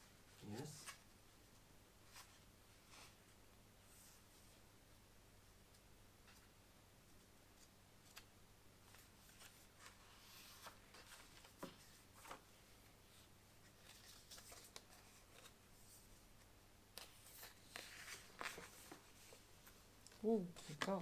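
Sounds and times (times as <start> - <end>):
paper and packaging rustling: 7.6 - 12.5, 13.6 - 16.1, 17.0 - 21.0.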